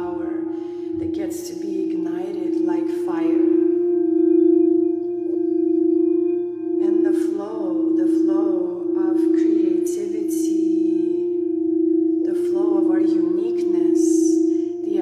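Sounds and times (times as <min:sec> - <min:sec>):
woman's soft voice: 0:00.0 - 0:03.8, 0:06.8 - 0:11.4, 0:12.2 - 0:15.0
singing bowl ringing: 0:00.0 - 0:15.0.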